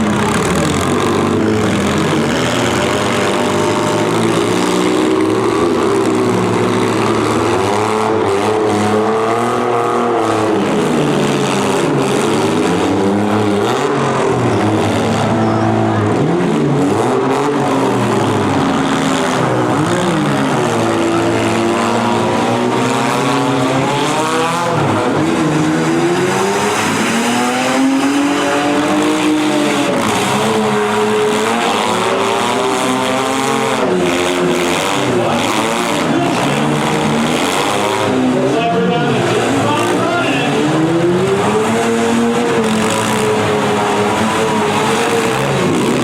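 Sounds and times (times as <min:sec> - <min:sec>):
car engines revving: 0:00.0 - 0:46.0.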